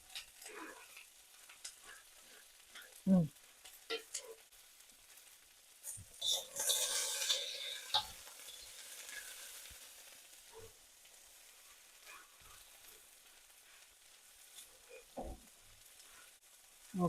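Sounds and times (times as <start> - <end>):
rice sizzling in frying pan: 0.0 - 17.0
spatula clanking on pan: 3.8 - 4.4.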